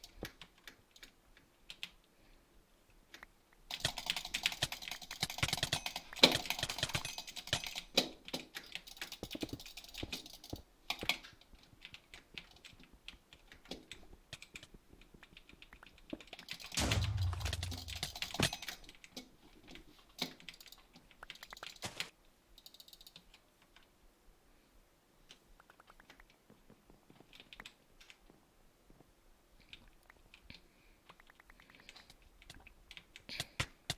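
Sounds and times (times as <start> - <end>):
low thump: 16.8 - 18.6.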